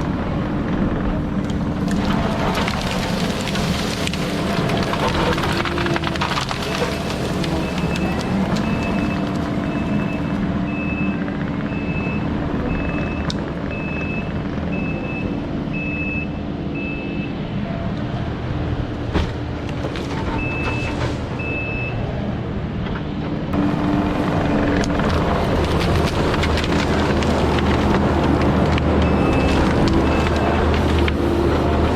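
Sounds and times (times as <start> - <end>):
reversing alarm beeping: 7.6 - 17.4
machine engine running: 23.6 - 31.9.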